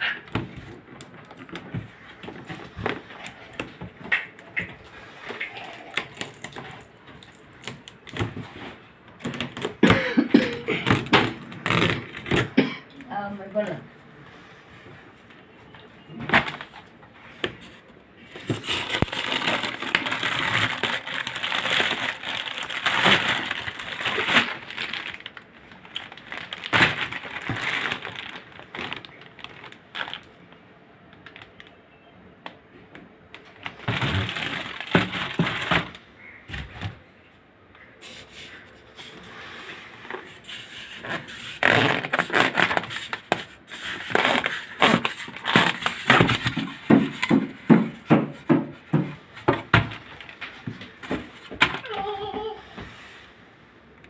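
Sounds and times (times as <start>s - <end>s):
packaging crinkling and rustling: 0.0s - 12.6s, 15.2s - 37.0s, 38.0s - 52.6s.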